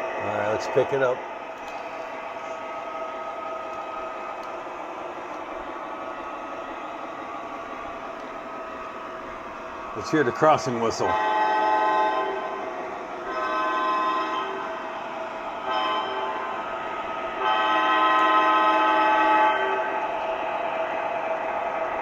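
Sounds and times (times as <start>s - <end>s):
model locomotive horn blasts: 11.0s - 14.8s, 15.6s - 16.6s, 17.2s - 20.0s.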